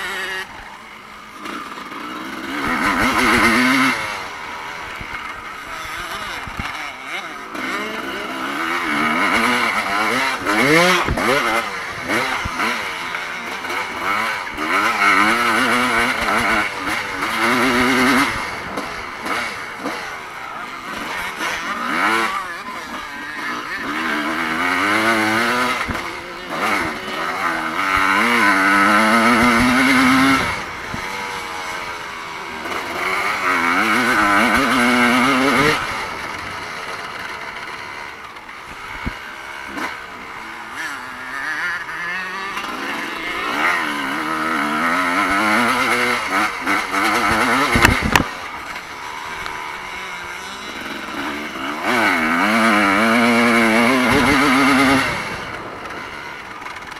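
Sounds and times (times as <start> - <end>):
motocross motorcycle engine revving: 0.0 - 56.9.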